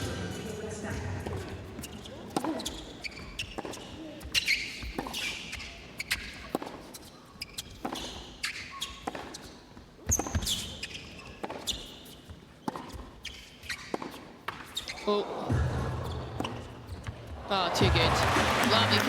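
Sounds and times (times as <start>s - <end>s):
racket hitting tennis ball: 0.0s - 19.0s
tennis ball bouncing: 0.0s - 19.0s
shoe squeaks on court: 1.7s - 15.2s, 16.0s - 17.4s.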